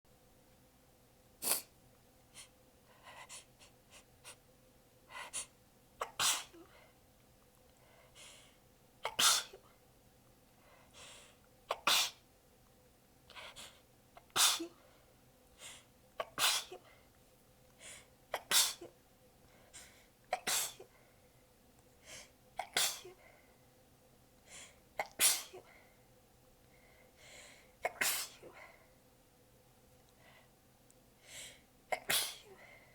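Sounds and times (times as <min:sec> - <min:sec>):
woman sneezing: 0:14.3 - 0:14.8, 0:16.2 - 0:16.8, 0:18.4 - 0:18.9, 0:32.0 - 0:32.5.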